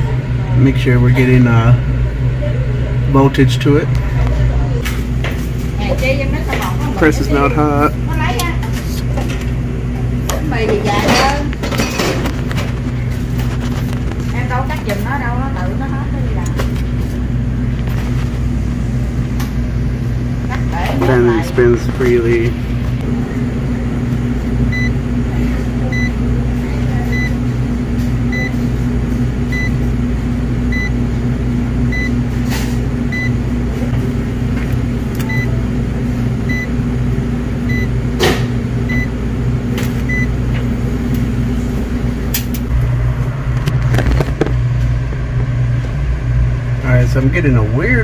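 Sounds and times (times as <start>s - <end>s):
low machinery hum: 0.0s - 48.0s
handling noise: 10.6s - 15.1s.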